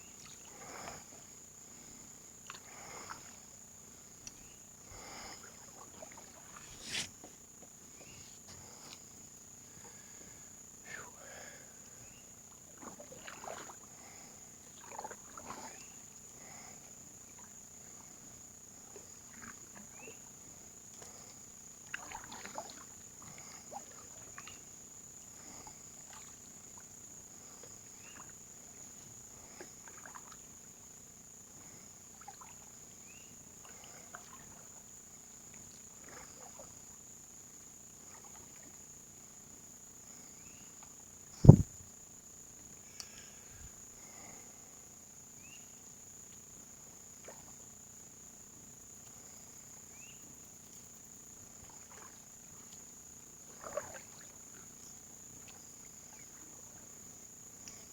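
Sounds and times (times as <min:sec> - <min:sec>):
paddle splashes and drips: 0:05.0 - 0:07.3, 0:12.7 - 0:14.0, 0:14.6 - 0:15.8, 0:21.8 - 0:24.7, 0:26.0 - 0:26.9, 0:29.6 - 0:30.5, 0:32.2 - 0:32.8, 0:33.6 - 0:34.7, 0:35.5 - 0:36.8, 0:38.0 - 0:38.8, 0:47.2 - 0:47.6, 0:51.4 - 0:57.9.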